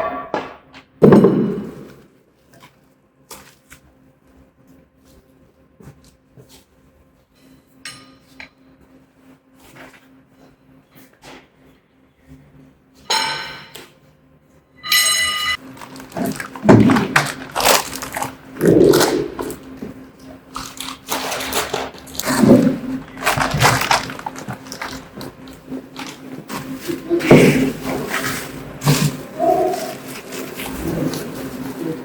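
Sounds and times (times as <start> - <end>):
short metallic rings: 14.8 - 15.6.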